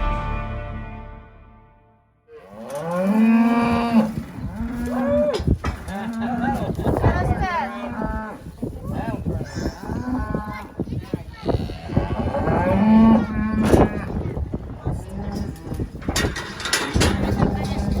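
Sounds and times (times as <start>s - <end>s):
cattle mooing and bawling: 2.4s - 6.6s, 11.5s - 14.2s.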